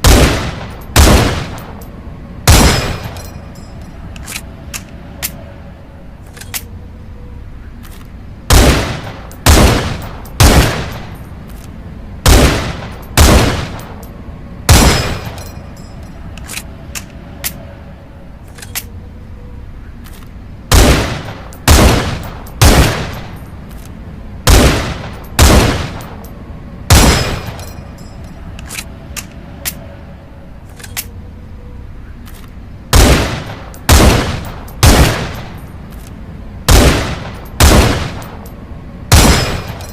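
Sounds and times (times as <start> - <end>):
rifle shots: 0.0 - 1.8, 2.5 - 3.2, 8.5 - 11.1, 12.2 - 14.0, 14.7 - 15.4, 20.7 - 23.4, 24.5 - 26.2, 26.9 - 27.6, 32.9 - 35.5, 36.7 - 38.4, 39.1 - 39.9.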